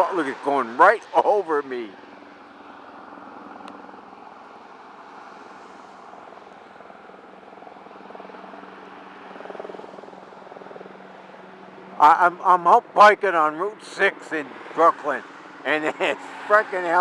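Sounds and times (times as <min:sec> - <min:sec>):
helicopter engine tone: 0:12.0 - 0:17.0.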